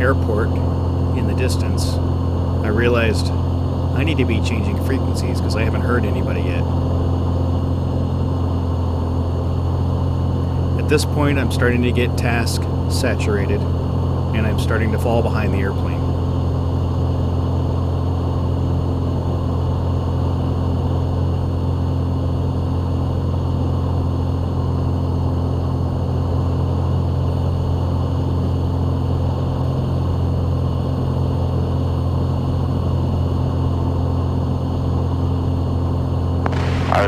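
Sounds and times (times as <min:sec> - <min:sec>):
airplane engine and propeller drone: 0:00.0 - 0:37.0.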